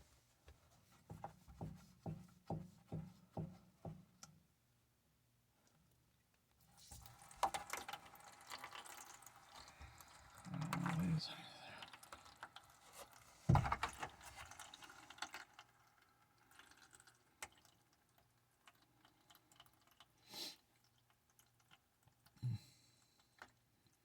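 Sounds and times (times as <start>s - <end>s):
water dripping and trickling: 6.9s - 22.4s
knock: 13.5s - 13.8s.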